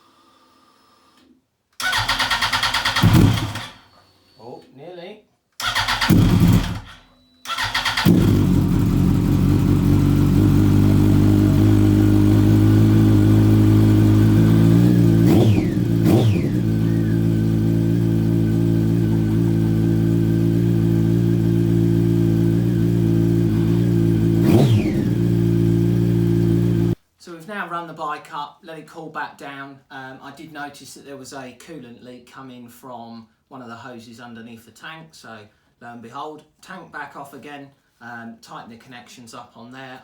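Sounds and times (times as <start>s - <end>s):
engine revving blips: 5.7s - 27.0s
motorcycle engine idling: 7.8s - 27.0s.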